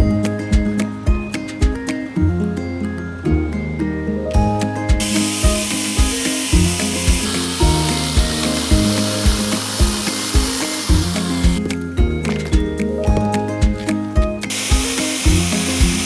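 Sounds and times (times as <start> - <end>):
background music with beat: 0.0 - 16.0
electric chainsaw cutting log: 5.0 - 12.6, 14.5 - 16.0.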